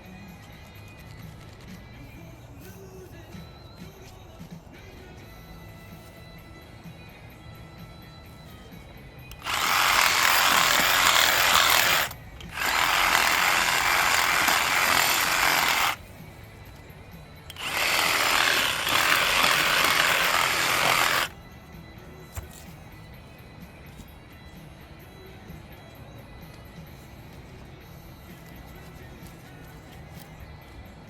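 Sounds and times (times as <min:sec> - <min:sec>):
reciprocating saw cutting pipe: 0:09.3 - 0:16.0, 0:17.5 - 0:21.4.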